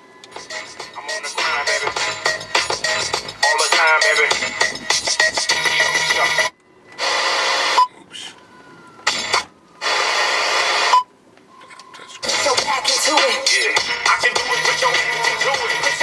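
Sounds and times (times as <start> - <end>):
hip hop music: 0.3 - 6.5, 9.1 - 9.5, 12.0 - 16.0.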